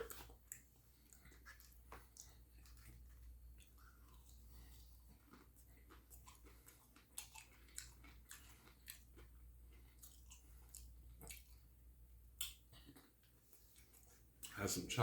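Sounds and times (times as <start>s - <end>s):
person chewing food: 0.0s - 14.6s.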